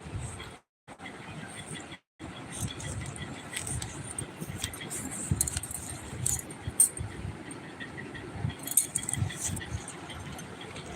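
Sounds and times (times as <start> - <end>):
sharp clinks and clicks: 5.4 - 7.0, 8.6 - 9.7.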